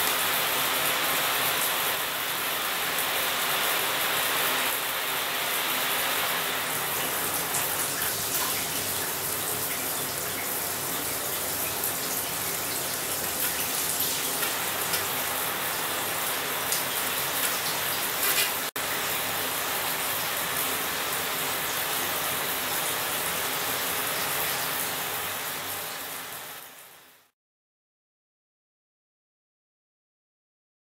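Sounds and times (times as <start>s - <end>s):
shower head spraying water: 5.4s - 18.7s.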